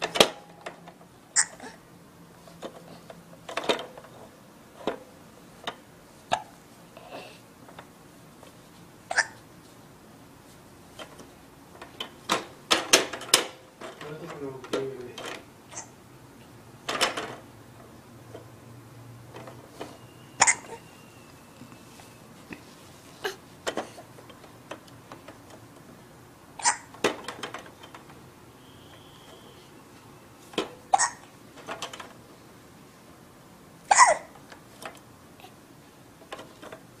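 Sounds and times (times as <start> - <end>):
baby hiccuping: 1.4 - 1.8, 9.1 - 9.4, 20.4 - 20.8, 26.6 - 26.9, 30.9 - 31.2, 33.9 - 34.3.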